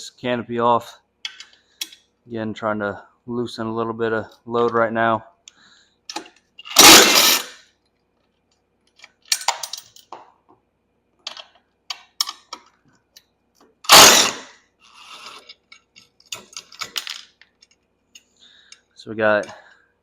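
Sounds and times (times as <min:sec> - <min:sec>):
short loud bursts: 0:06.7 - 0:07.6, 0:13.9 - 0:14.5
ratchet clicking: 0:13.9 - 0:14.5.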